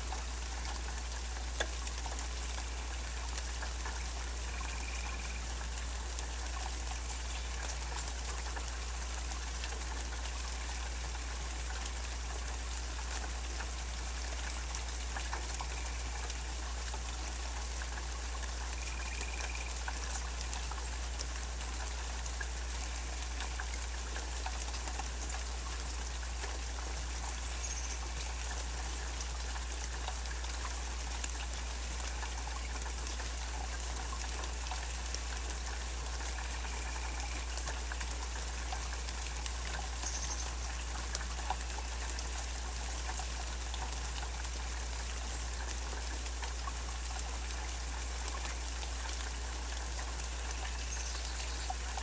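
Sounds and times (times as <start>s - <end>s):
rain pattering: 0.0s - 52.0s.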